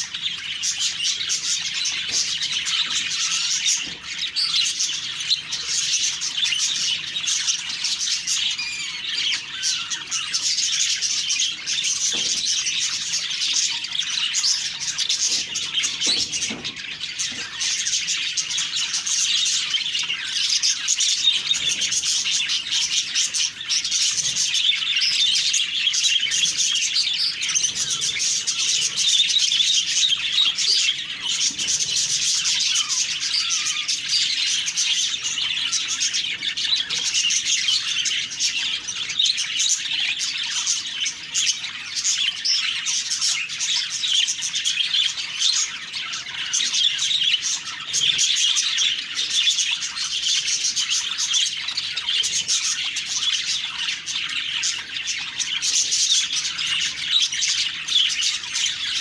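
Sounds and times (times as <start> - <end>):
budgerigars chattering and warbling: 0.0 - 59.0.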